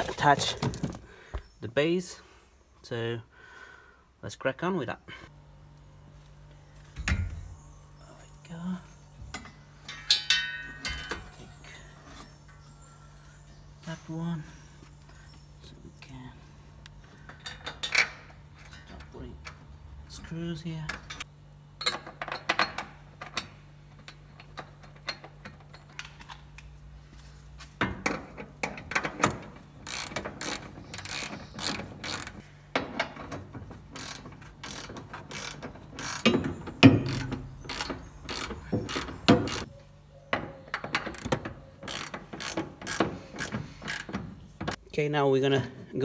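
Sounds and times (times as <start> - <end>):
ratchet wrench clicking: 29.8 - 32.4, 34.0 - 36.3, 37.1 - 39.7, 41.9 - 44.1.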